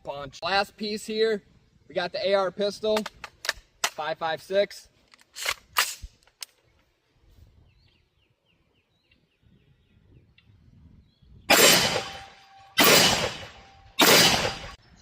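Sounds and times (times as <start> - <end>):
gunshots with echo: 11.5 - 14.8.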